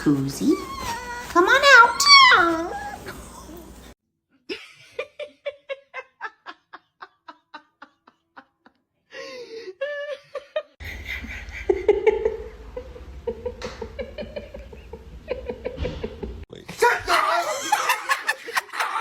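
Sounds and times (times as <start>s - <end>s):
person laughing: 9.6s - 19.0s
low hum: 10.8s - 16.4s.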